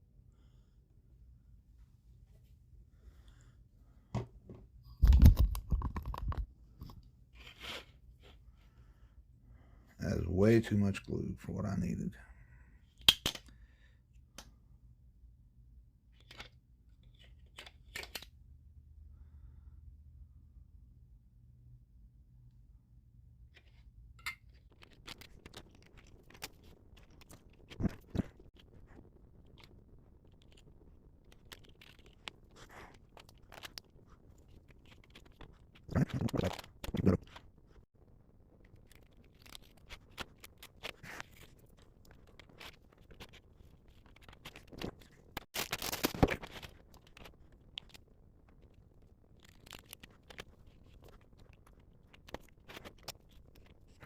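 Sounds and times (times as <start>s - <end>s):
plastic parts clicking and scraping: 16.1s - 18.4s, 23.5s - 37.8s, 38.6s - 54.0s.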